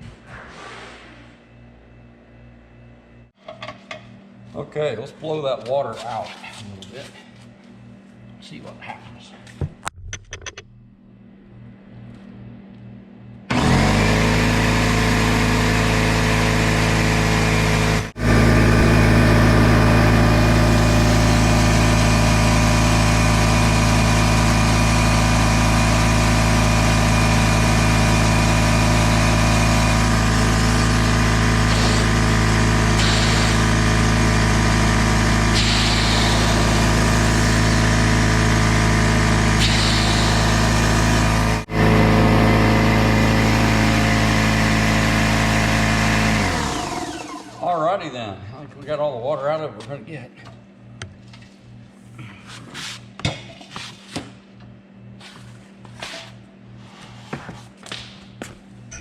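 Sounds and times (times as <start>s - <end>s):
air compressor running: 13.4s - 48.3s
short air hisses: 33.0s - 33.8s, 35.5s - 37.8s, 39.6s - 41.2s.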